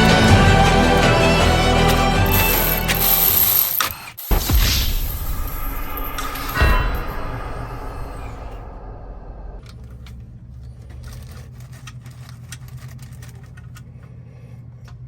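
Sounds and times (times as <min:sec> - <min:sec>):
clicks and scrapes of metal parts: 0:02.3 - 0:04.4, 0:09.6 - 0:14.2
steady low hum: 0:06.0 - 0:11.3.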